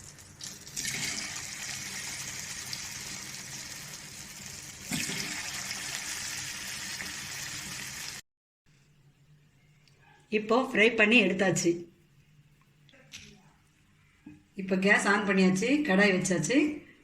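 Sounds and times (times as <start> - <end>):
chicken sizzling in oil: 0.0 - 8.2.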